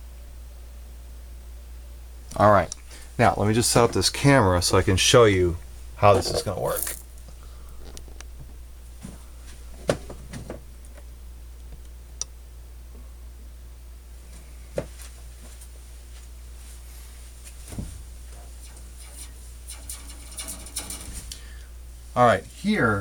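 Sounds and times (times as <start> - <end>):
low hum: 17.7 - 22.1.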